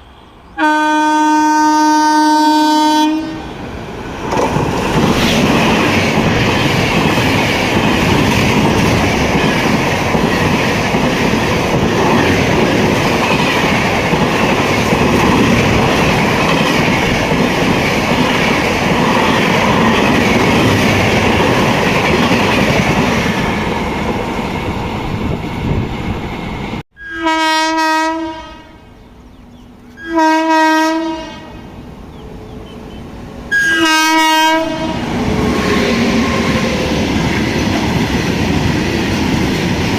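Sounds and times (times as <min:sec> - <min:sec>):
train rushing past on rails: 0:00.0 - 0:39.9
locomotive horn blasts: 0:00.6 - 0:03.5, 0:27.0 - 0:28.9, 0:29.9 - 0:31.7, 0:33.5 - 0:35.1.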